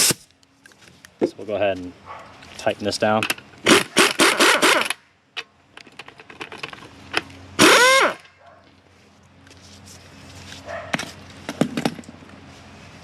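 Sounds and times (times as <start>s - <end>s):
motor whining down: 7.6s - 8.2s.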